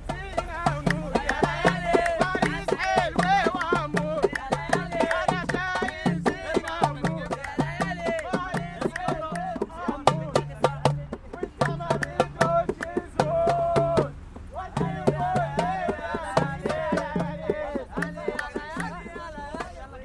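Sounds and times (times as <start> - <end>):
voices singing ornamented melody: 0.0 - 10.6, 11.4 - 20.0
hand drum beat: 0.0 - 14.2, 14.8 - 19.8.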